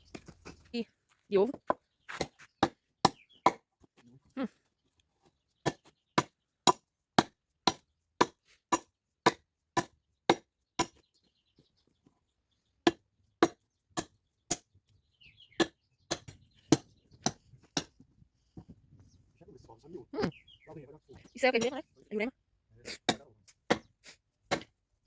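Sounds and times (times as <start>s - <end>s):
axe chopping firewood: 2.1s - 3.7s, 5.6s - 11.0s, 12.8s - 14.7s, 15.6s - 18.0s, 23.0s - 24.8s.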